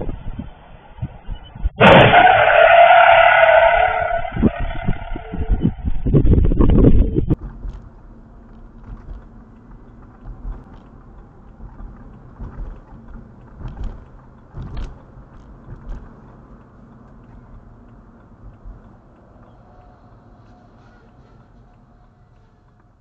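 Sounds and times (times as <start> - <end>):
low hum: 0.0 - 22.6
soft thumps and knocks: 11.6 - 16.3.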